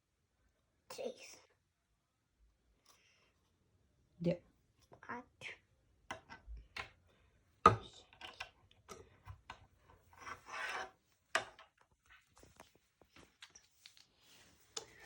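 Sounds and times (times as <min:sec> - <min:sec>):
plastic containers rubbing and scraping: 0:09.9 - 0:11.0.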